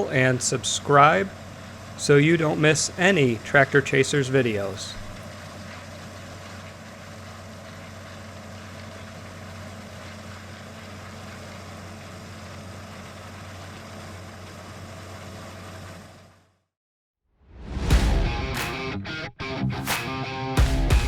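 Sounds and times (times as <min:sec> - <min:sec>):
combine harvester running: 0:00.0 - 0:16.6.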